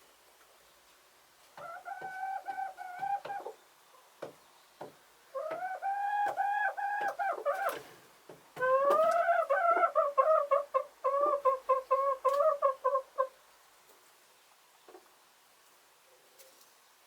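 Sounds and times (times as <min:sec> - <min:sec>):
chickens calling: 0:01.6 - 0:04.2, 0:04.8 - 0:08.0, 0:08.6 - 0:13.4.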